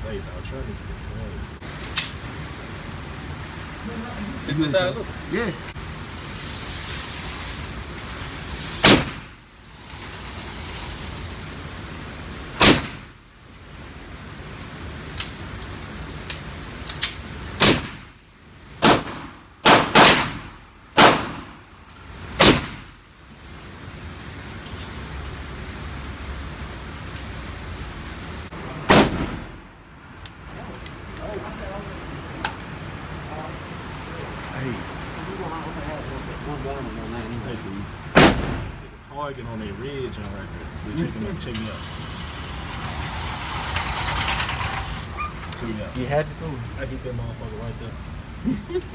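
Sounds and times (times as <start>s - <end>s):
loud gunshots: 12.6s - 13.0s, 17.6s - 18.0s, 18.8s - 21.5s, 28.9s - 29.6s, 38.2s - 38.8s.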